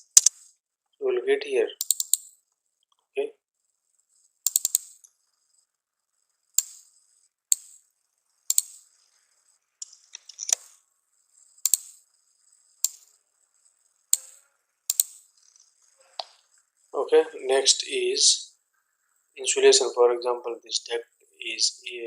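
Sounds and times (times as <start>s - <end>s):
computer clicks: 0.0s - 0.6s, 1.8s - 3.0s, 4.4s - 5.6s, 6.5s - 10.8s, 11.4s - 16.7s.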